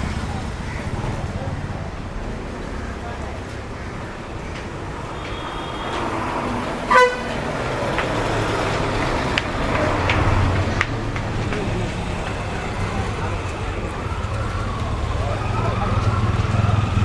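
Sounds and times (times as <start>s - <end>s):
street traffic: 0.0s - 17.0s
vehicle horn toot: 5.0s - 8.5s.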